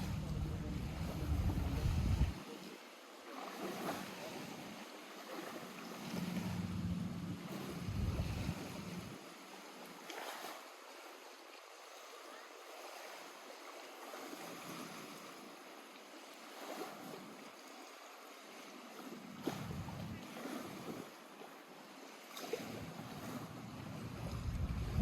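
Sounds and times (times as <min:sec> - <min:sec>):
wind buffeting microphone: 0:00.0 - 0:02.4, 0:06.2 - 0:09.2, 0:19.5 - 0:20.2, 0:23.2 - 0:25.0
small waves lapping at shore: 0:00.0 - 0:25.0.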